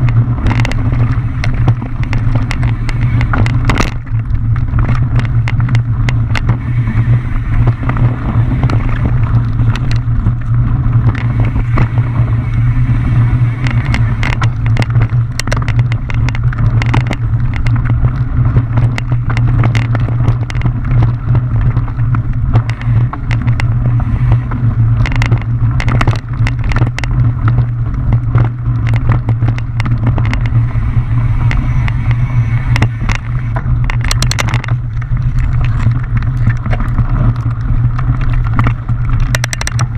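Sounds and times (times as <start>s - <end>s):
bike rattling over rocks: 0.0s - 39.9s
wind rumble on microphone: 0.0s - 39.9s.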